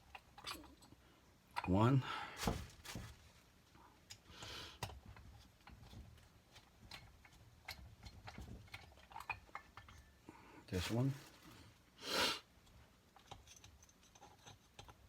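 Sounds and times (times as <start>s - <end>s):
soft rustle: 10.7s - 11.8s
metal parts and tools clicking: 13.2s - 15.0s.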